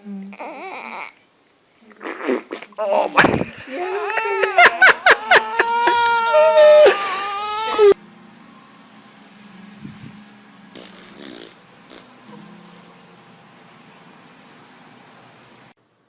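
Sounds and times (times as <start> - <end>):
baby crying: 0.4 - 1.2, 2.8 - 8.0.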